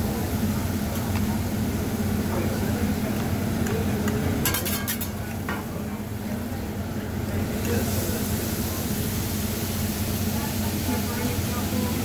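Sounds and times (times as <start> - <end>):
food sizzling: 0.0 - 6.2, 7.2 - 12.0
metal spatulas scraping a griddle: 4.4 - 5.2.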